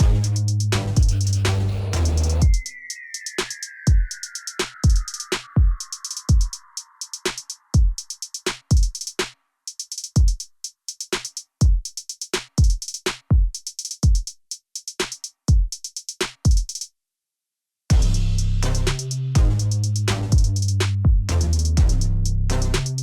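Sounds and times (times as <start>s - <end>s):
bass line: 0.0s - 2.5s, 17.9s - 23.0s
electronic drum-machine beat: 0.0s - 16.8s, 17.9s - 23.0s.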